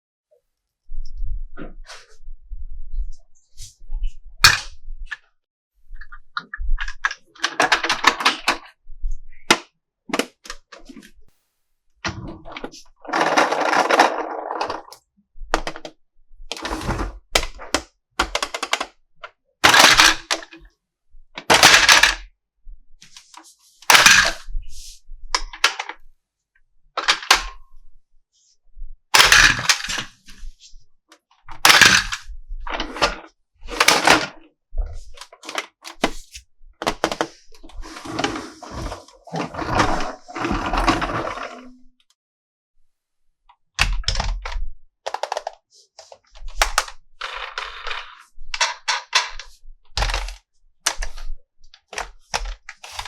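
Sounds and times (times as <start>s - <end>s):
plastic packaging rustling and clicking: 35.0s - 37.8s, 43.8s - 53.0s.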